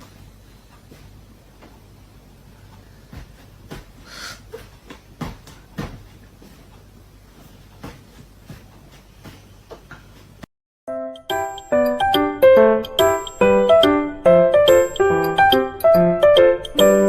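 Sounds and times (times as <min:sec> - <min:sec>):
short hiss: 0:04.0 - 0:04.4.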